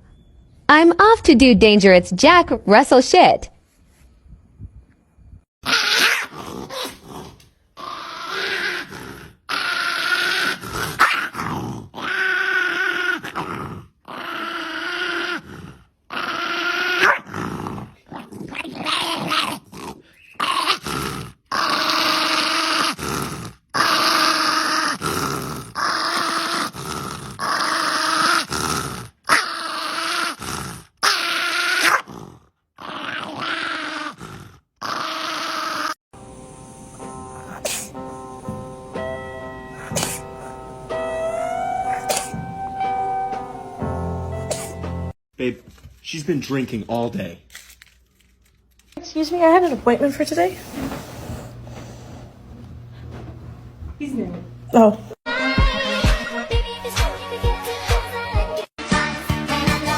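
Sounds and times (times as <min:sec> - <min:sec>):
dog growling and whining: 0:05.6 - 0:36.0, 0:39.6 - 0:44.8.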